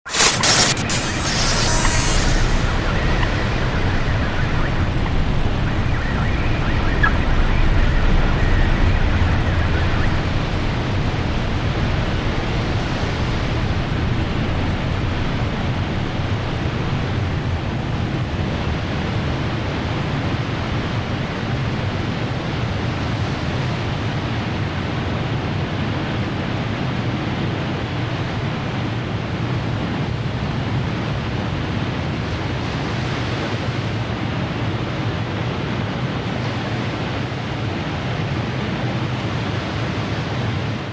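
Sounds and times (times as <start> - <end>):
steady rushing noise: 0.0 - 40.9
deep rumble: 0.2 - 26.7.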